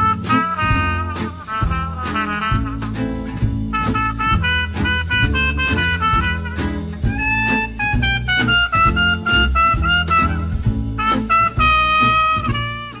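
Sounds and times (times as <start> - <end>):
jazzy tune with horns and drums: 0.0 - 13.0.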